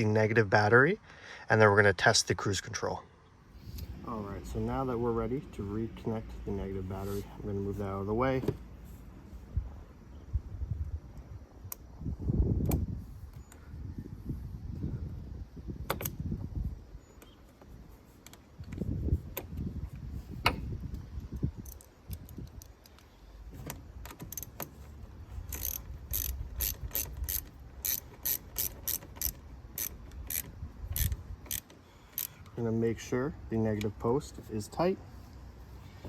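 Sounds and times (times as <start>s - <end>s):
ratchet wrench clicking: 21.5s - 23.1s, 24.0s - 24.7s, 25.4s - 32.6s.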